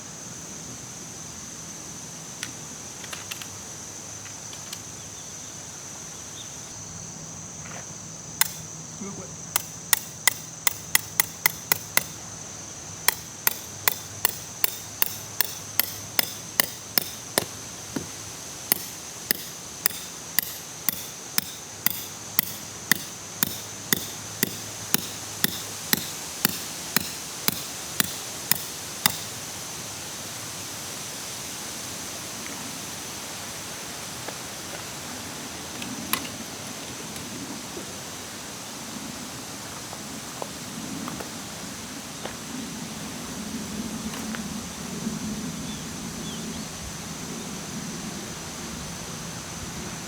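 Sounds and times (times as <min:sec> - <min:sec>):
hammer driving tent stake: 0:08.4 - 0:08.7, 0:09.6 - 0:12.2, 0:13.1 - 0:29.5.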